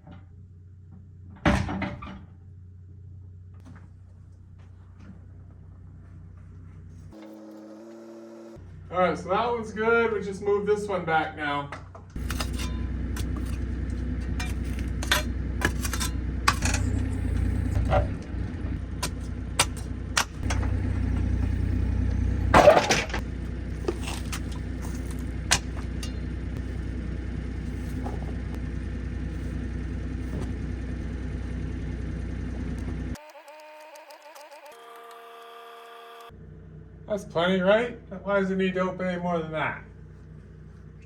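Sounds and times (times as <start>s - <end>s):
engine droning: 2.3s - 41.0s
knocks and clatters: 11.8s - 26.8s, 27.6s - 28.7s.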